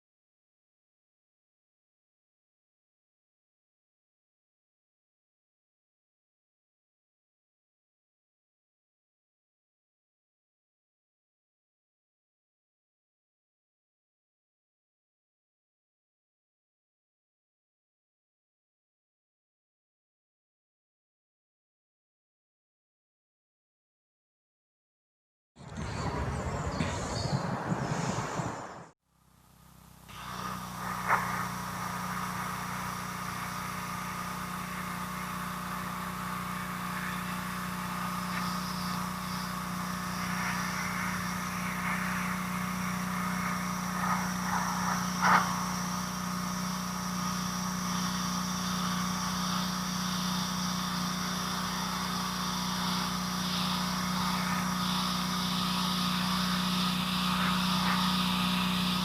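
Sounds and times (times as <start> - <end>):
steady motor hum: 25.6 - 59.0.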